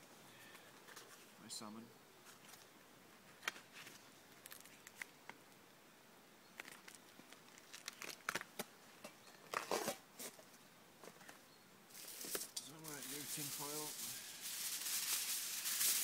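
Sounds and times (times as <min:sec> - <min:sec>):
wrapping crinkling and rustling: 0:06.6 - 0:08.7, 0:11.9 - 0:16.0.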